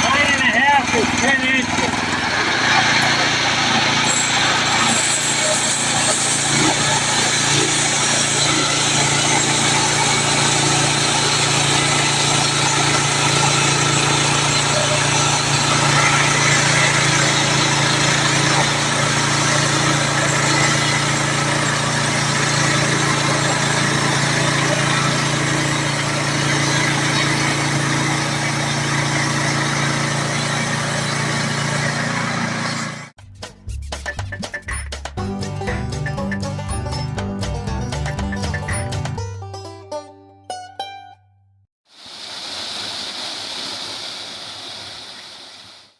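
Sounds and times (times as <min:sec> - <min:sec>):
sawmill engine humming: 0:00.0 - 0:33.2, 0:34.5 - 0:39.2.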